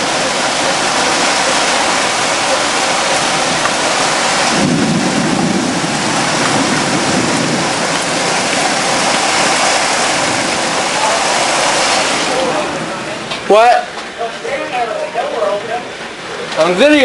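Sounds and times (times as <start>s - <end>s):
thunder rumbling: 0.0s - 13.4s
heavy rain pouring: 0.0s - 17.0s.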